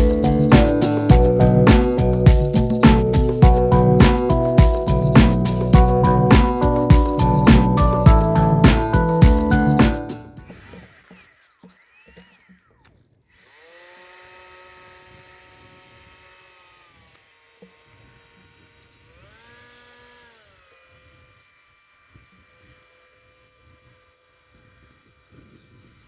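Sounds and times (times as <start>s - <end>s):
small electric motor whining: 0.0s - 5.9s, 10.1s - 26.0s.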